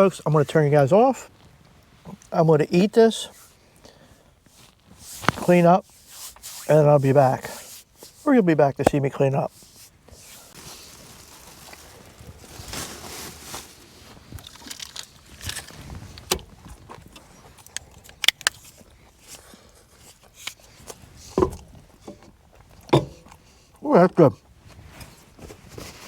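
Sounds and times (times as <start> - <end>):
food rustling: 4.4 - 23.8.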